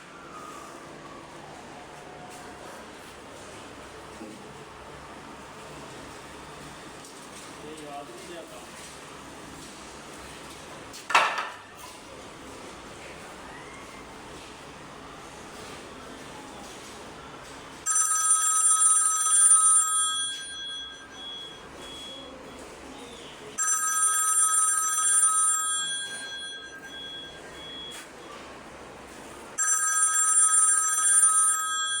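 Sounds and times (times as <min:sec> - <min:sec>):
bell-like ringing tone: 0:17.9 - 0:22.3, 0:23.6 - 0:28.0, 0:29.6 - 0:32.0.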